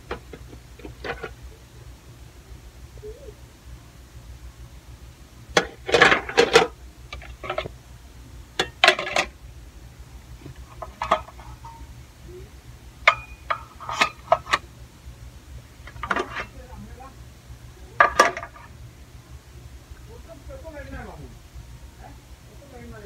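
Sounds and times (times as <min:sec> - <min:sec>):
kitchenware clattering and clinking: 0:05.6 - 0:06.7, 0:10.8 - 0:11.8, 0:13.1 - 0:14.6, 0:15.9 - 0:16.5, 0:18.0 - 0:18.7.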